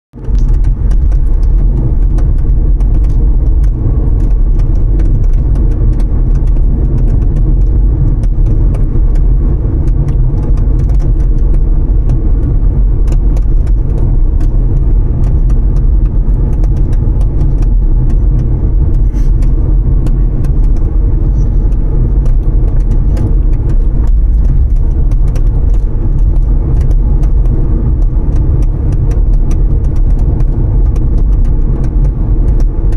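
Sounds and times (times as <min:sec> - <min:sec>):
road and engine rumble: 0:00.1 - 0:32.9
trunk lid rattling: 0:00.2 - 0:32.9.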